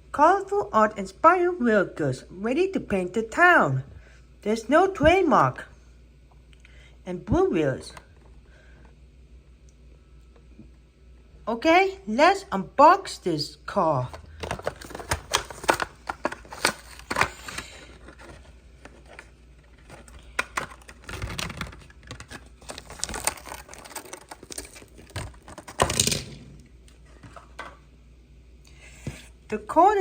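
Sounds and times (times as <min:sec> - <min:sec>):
plastic blister pack crackling: 0:14.3 - 0:26.6
packaging crinkling and tearing: 0:14.4 - 0:26.4.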